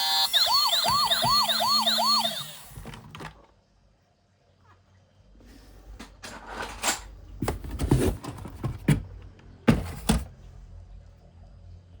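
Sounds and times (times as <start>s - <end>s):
knocks and clicks of toys: 0.5s - 2.4s.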